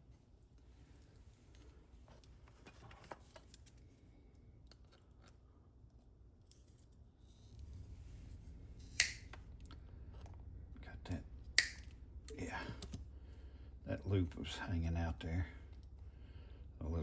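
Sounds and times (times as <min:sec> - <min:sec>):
cutters snipping plastic staple: 0:08.9 - 0:09.2, 0:11.6 - 0:11.9.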